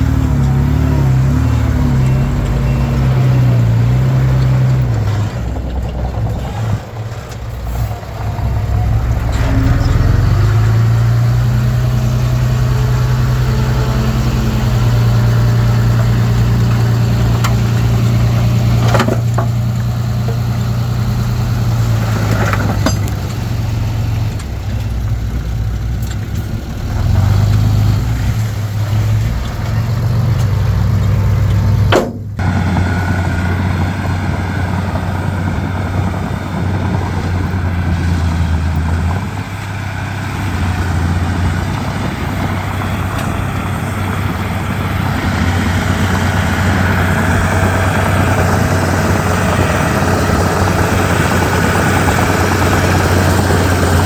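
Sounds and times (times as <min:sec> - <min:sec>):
bulldozer diesel engine running: 0:00.0 - 0:54.0
sharp knocks: 0:31.8 - 0:32.4.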